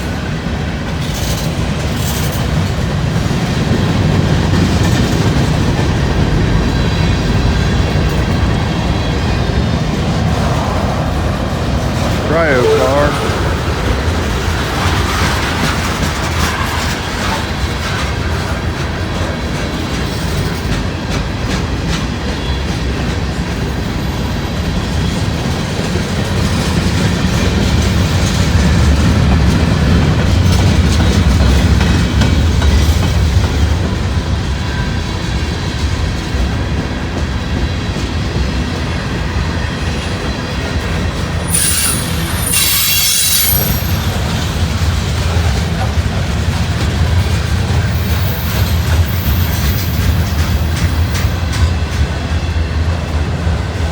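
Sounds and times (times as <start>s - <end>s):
freight train rumbling past: 0.0s - 53.9s
high-pitched screech: 41.4s - 44.9s.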